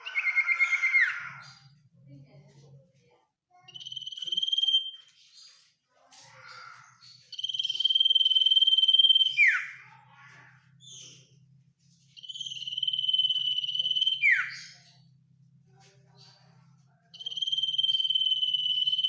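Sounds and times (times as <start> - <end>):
bird singing high trill: 3.7 - 5.0, 7.3 - 9.8, 12.2 - 14.8, 17.2 - 19.0.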